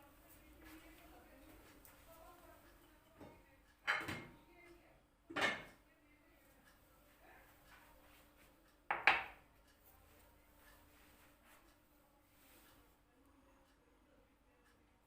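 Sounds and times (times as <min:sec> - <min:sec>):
kitchenware clinking: 0:03.2 - 0:04.4, 0:08.9 - 0:09.4.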